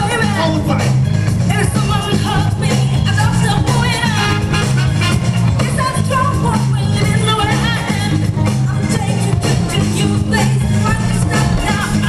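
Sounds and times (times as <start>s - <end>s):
breakbeat music with vocals: 0.0s - 12.0s.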